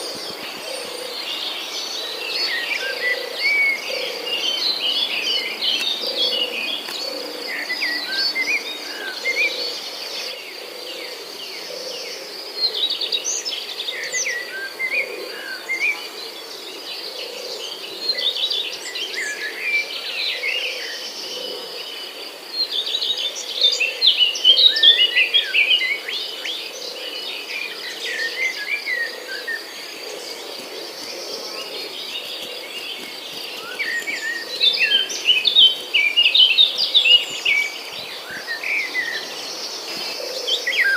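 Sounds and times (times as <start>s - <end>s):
small birds chirping: 0.0s - 10.4s, 27.0s - 40.9s.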